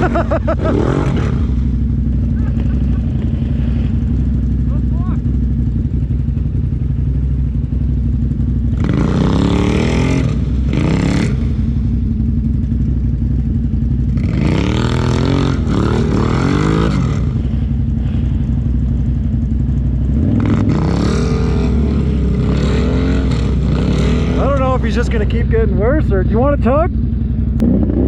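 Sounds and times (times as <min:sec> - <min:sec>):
atv engine idling: 0:00.0 - 0:28.0
atv engine revving: 0:00.0 - 0:28.0.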